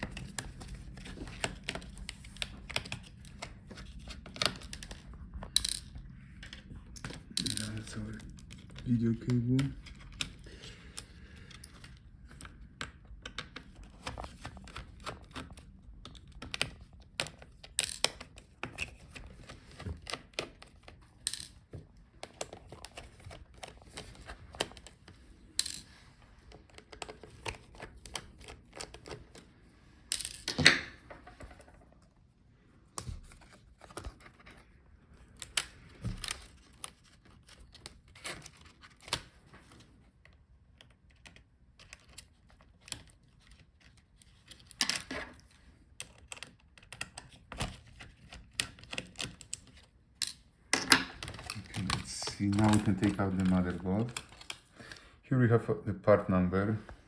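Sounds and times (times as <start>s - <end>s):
tools clicking inside laptop: 6.6s - 21.6s, 45.9s - 54.7s.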